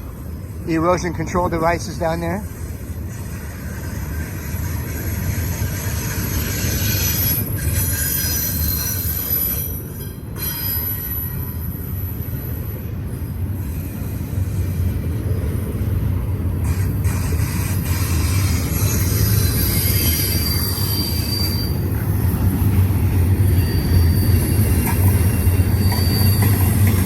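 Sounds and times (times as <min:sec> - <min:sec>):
steel wheels rumbling on rail: 0:00.0 - 0:27.0
high-pitched wheel squeal: 0:03.1 - 0:11.5, 0:17.1 - 0:22.2, 0:23.4 - 0:27.0.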